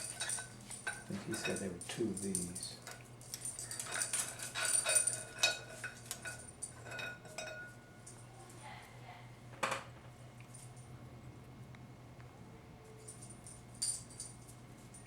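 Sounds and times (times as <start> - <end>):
small metal parts clinking: 0.0 - 8.2.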